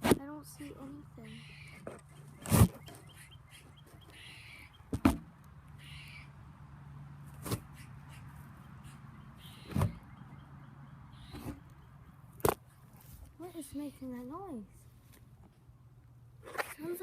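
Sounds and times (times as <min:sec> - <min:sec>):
raspy animal calls: 0:01.2 - 0:04.9, 0:05.7 - 0:06.4, 0:07.6 - 0:12.0.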